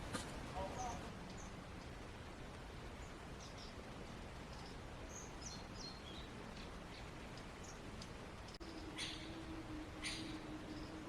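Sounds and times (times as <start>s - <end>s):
small birds chirping: 0.0s - 11.0s
steady low hiss: 0.0s - 11.0s.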